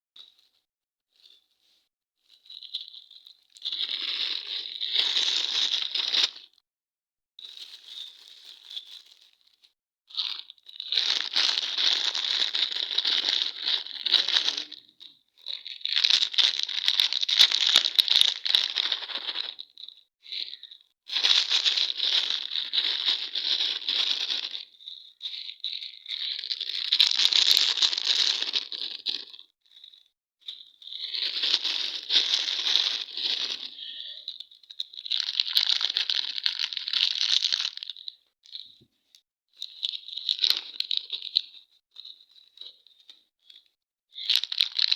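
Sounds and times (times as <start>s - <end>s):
candy wrappers crinkling: 3.6s - 6.4s, 10.2s - 14.9s, 15.5s - 24.7s, 25.5s - 29.4s, 31.0s - 33.8s, 34.7s - 38.6s, 39.6s - 41.6s, 44.2s - 44.9s.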